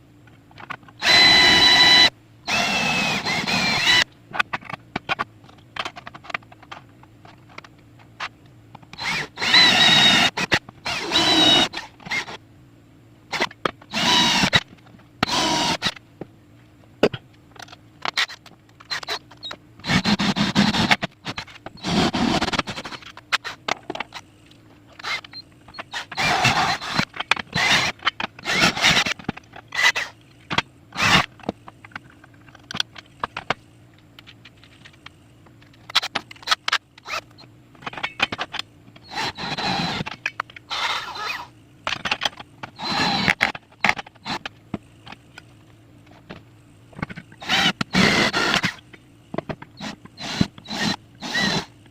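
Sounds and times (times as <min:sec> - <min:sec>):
drill whirring and scraping: 0:01.0 - 0:04.1, 0:09.0 - 0:12.4, 0:13.3 - 0:16.0, 0:18.1 - 0:24.2, 0:24.9 - 0:30.2, 0:31.0 - 0:31.3, 0:39.0 - 0:41.5, 0:42.8 - 0:43.5, 0:47.4 - 0:48.8, 0:49.8 - 0:51.7
tools clicking and knocking: 0:03.3 - 0:10.7.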